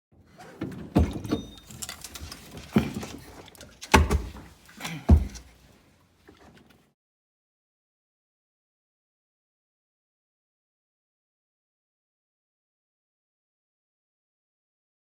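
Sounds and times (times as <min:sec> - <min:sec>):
tools clattering: 0:00.4 - 0:05.5
hard knocks and clunks: 0:00.5 - 0:05.5.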